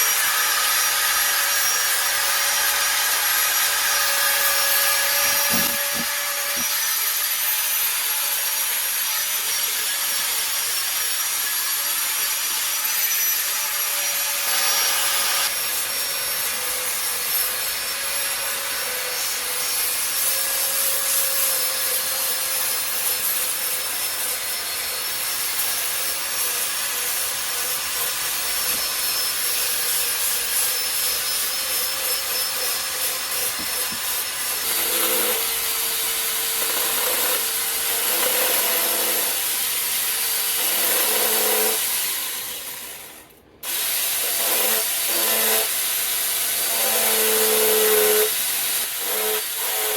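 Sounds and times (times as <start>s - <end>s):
power tool grinding wood: 0.0s - 15.5s, 26.8s - 49.9s.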